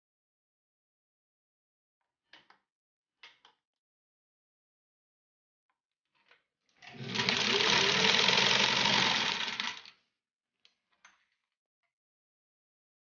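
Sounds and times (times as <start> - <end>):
sewing machine motor running: 6.9 - 9.9.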